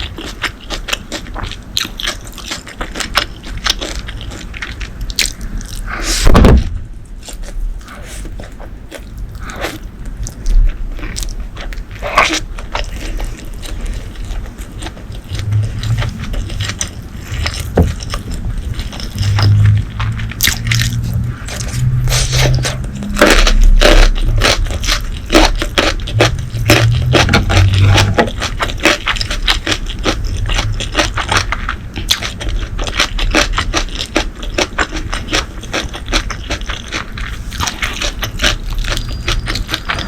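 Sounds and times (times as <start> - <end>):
crisp chewing: 0.0 - 40.0
low bumps: 15.1 - 25.0.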